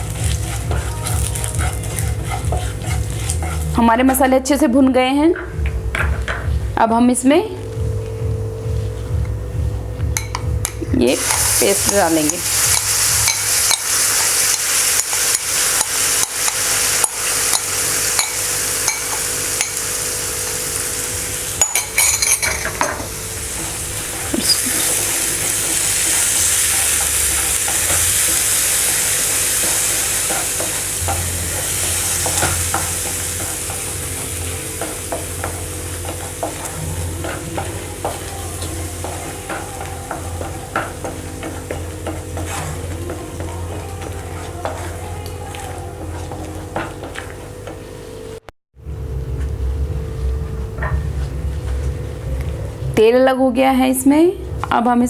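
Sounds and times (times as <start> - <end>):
puree sizzling in oil: 0.0 - 3.8, 11.0 - 48.4
spoon scraping a pan: 0.0 - 3.8, 24.1 - 47.4.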